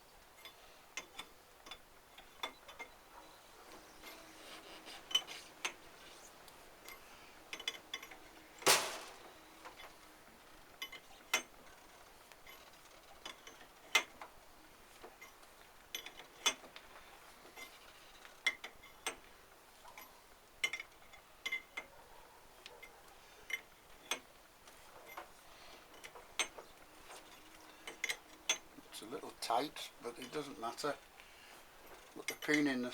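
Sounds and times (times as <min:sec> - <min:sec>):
metal knock: 0:08.7 - 0:09.2.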